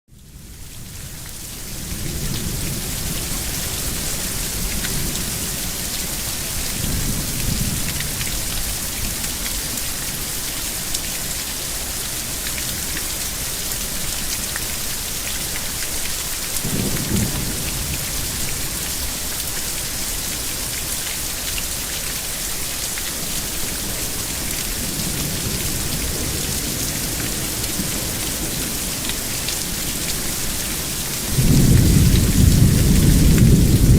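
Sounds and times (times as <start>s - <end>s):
heavy rain hissing: 0.4s - 33.9s
thunder rumbling: 16.6s - 18.6s, 31.3s - 33.9s.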